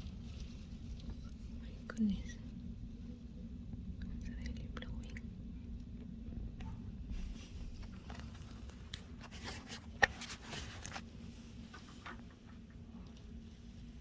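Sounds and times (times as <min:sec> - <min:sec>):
muffled snowstorm wind: 0:00.0 - 0:14.0
steady hum: 0:00.0 - 0:14.0.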